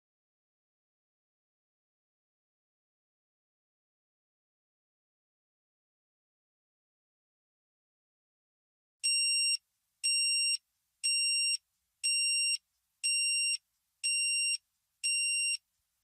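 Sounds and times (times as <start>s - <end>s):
timer alarm beeping: 9.0s - 15.6s.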